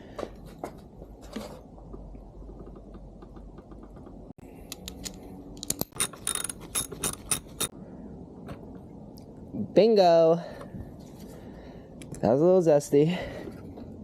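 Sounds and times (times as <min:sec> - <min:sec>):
hand tools clicking on metal: 0:04.7 - 0:07.7.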